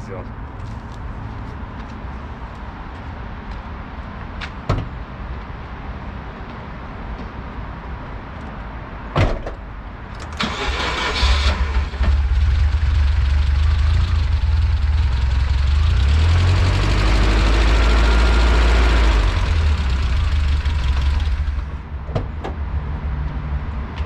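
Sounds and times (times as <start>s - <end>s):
thump: 4.7s - 4.9s, 9.2s - 9.6s
engine cranking and starting: 10.2s - 21.8s.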